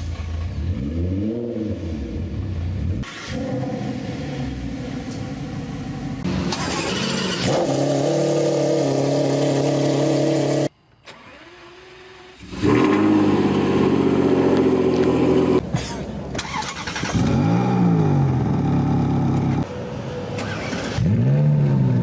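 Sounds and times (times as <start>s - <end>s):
car engines starting and idling: 0.0s - 22.0s.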